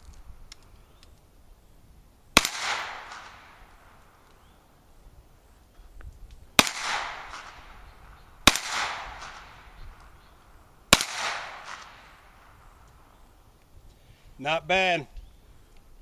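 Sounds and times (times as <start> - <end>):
gunshots with short echo: 6.6 - 7.8, 8.4 - 9.6, 10.9 - 12.2.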